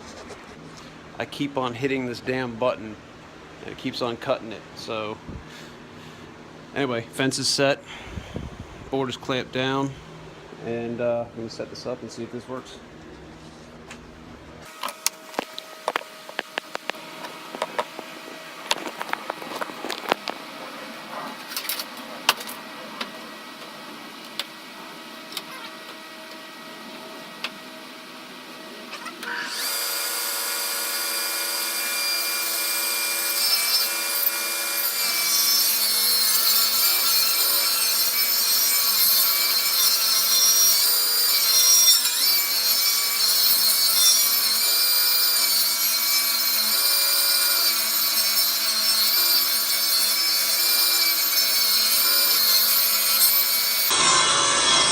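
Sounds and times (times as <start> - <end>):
table saw cutting wood: 14.6 - 22.4, 28.6 - 54.9.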